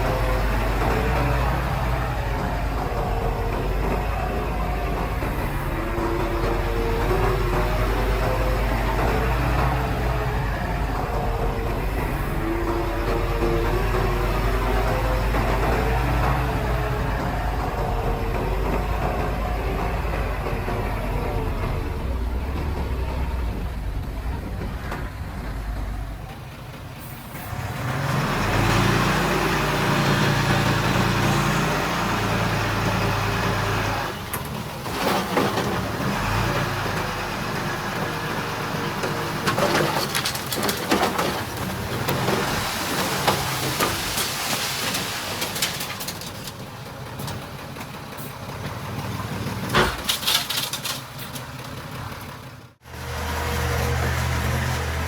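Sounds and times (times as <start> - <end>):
diesel engines of earthmoving machinery: 0.0 - 55.0
metallic clanks and squeals: 38.6 - 46.6, 49.6 - 51.7.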